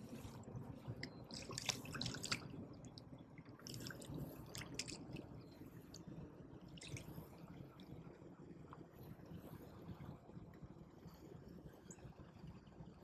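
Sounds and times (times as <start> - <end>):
water dripping and splashing: 1.0 - 5.3, 6.8 - 7.2.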